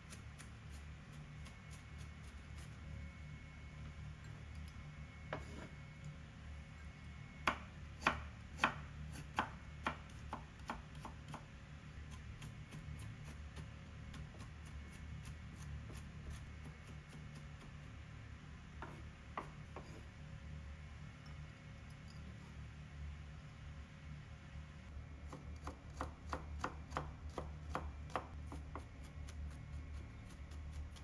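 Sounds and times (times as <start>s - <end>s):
knife chopping on cutting board: 7.4s - 11.5s, 18.8s - 20.0s, 25.3s - 31.0s.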